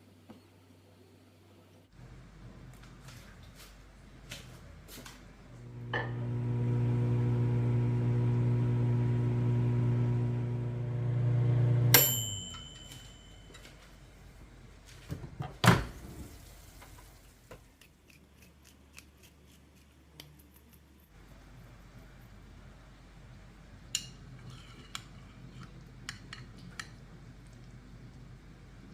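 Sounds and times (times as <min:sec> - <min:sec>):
microwave oven humming: 0:05.5 - 0:13.5.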